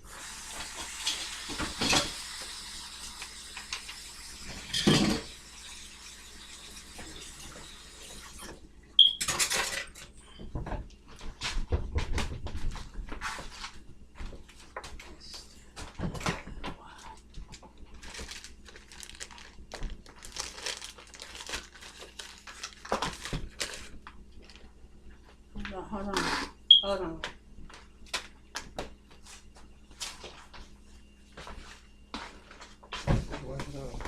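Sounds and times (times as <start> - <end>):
dishes and utensils clattering: 0.9 - 2.2, 4.6 - 5.3, 9.1 - 10.2.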